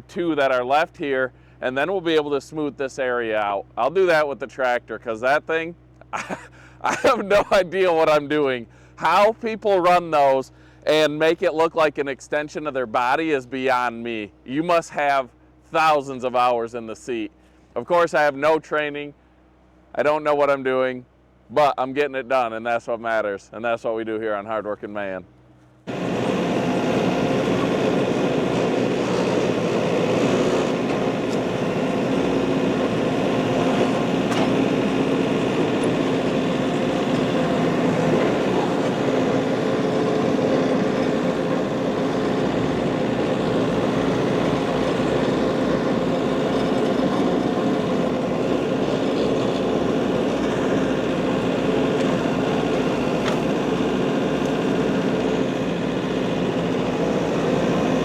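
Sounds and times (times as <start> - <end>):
machinery engine running: 25.9 - 58.0.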